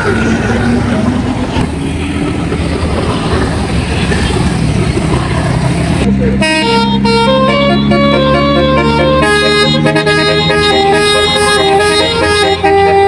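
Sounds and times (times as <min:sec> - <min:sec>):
bus traffic noise: 0:00.0 - 0:13.0
musical bus horn playing tune: 0:06.4 - 0:13.0.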